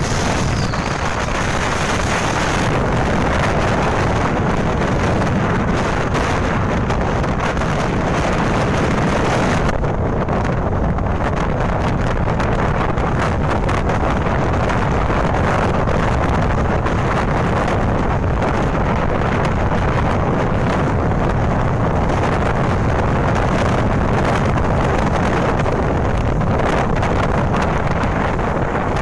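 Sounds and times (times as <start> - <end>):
wind blowing across microphone: 0.0 - 29.0.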